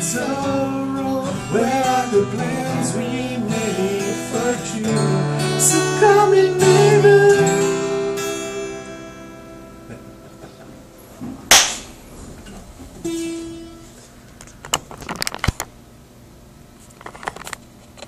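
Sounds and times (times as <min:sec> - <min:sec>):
plucked guitar chord: 0:00.0 - 0:11.2, 0:13.0 - 0:14.0
acoustic guitar chord ringing: 0:00.0 - 0:14.3.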